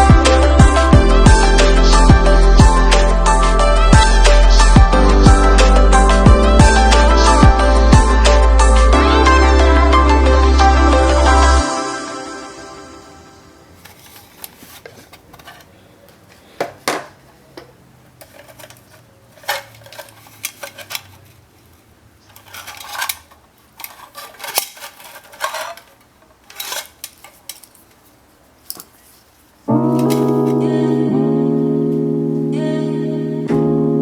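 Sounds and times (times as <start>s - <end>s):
metal camp gear clinking: 18.2s - 21.4s, 22.3s - 27.8s.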